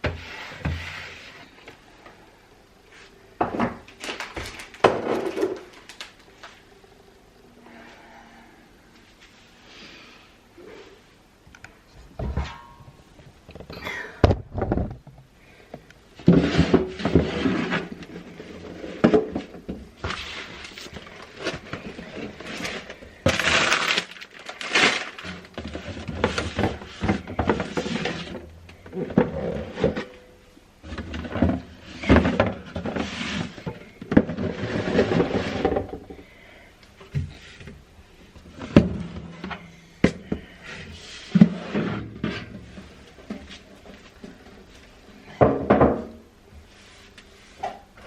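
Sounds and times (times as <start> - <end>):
kitchen containers clattering: 3.4 - 6.0
packaging rustling: 4.0 - 6.6, 20.1 - 26.6.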